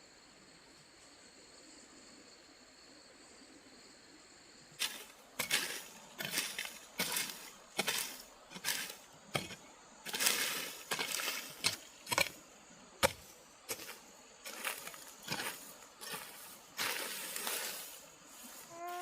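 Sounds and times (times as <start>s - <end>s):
hand tool strikes and scrapes: 4.8s - 12.4s, 13.0s - 18.0s.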